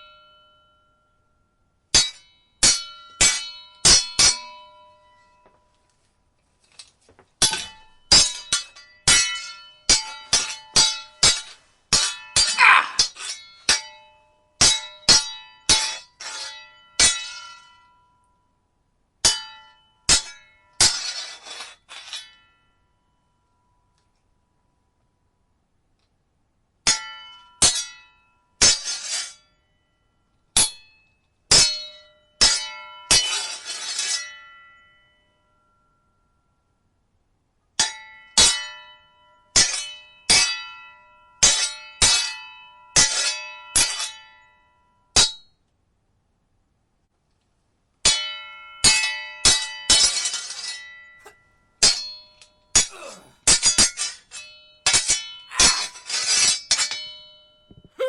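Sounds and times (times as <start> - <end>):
sword blades clashing: 52.9 - 53.4, 55.5 - 56.0.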